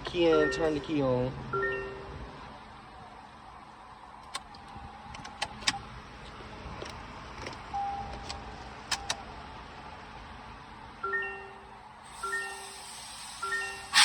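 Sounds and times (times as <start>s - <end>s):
sharp clicks in car: 4.2s - 5.9s, 6.8s - 9.3s.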